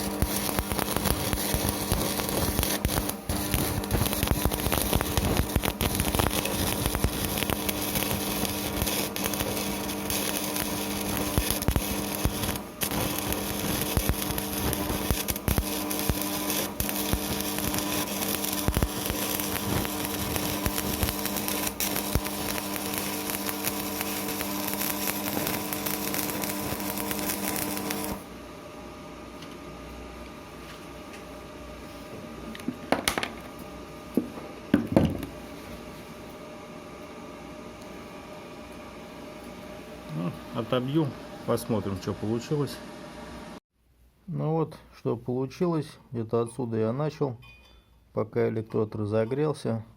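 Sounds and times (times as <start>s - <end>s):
welding arc crackling: 0.0s - 28.3s
welder humming: 0.0s - 43.6s.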